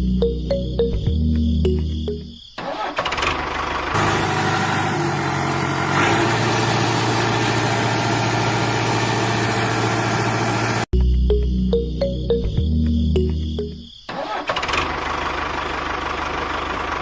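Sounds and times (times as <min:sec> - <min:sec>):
heavy vehicle engine idling: 0:03.3 - 0:10.9, 0:14.7 - 0:17.0.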